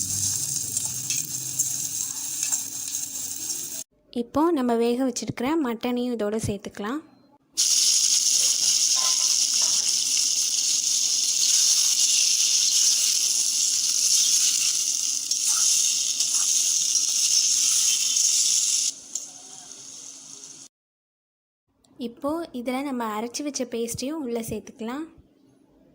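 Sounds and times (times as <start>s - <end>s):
meat sizzling in hot oil: 0.0s - 3.9s, 7.6s - 20.7s.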